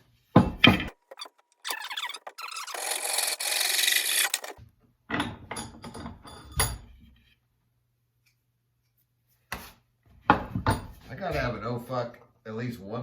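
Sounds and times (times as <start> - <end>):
tool scraping across wood: 0.9 - 4.6.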